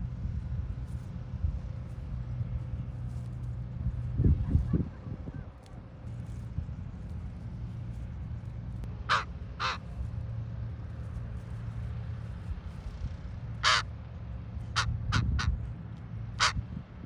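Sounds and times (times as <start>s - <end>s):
steady low rumble: 0.0s - 17.0s
raven croaking: 9.1s - 9.8s, 13.6s - 13.8s.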